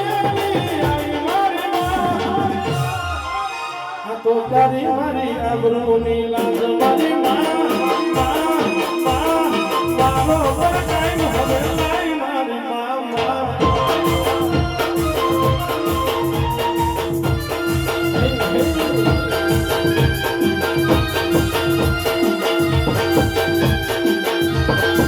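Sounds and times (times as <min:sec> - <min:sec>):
steady drum beat: 0:00.0 - 0:03.3, 0:06.4 - 0:12.2, 0:13.2 - 0:25.0
instrumental folk melody: 0:13.6 - 0:25.0.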